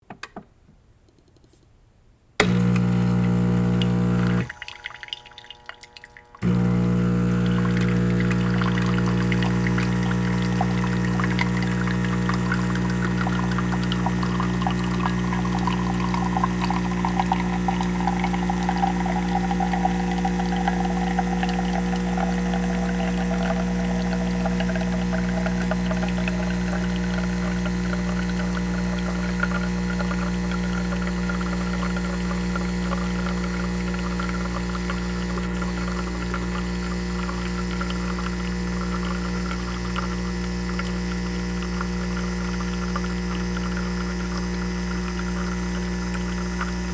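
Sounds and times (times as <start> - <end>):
pump hum: 2.4 - 46.9
gurgling note: 3.2 - 27.3
liquid streaming and crackling: 3.8 - 46.9.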